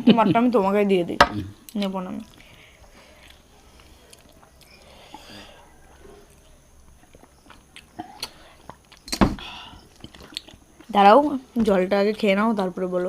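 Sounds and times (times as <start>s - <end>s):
chewing and handling food: 1.7s - 9.1s, 9.8s - 12.3s.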